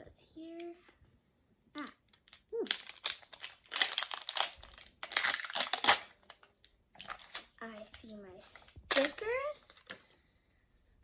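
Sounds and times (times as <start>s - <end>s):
plastic wrapping crinkling and tearing: 2.2s - 10.0s.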